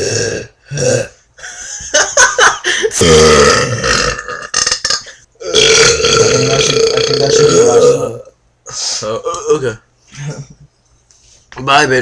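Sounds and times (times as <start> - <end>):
boys belching: 0.0 - 1.2, 3.0 - 8.3.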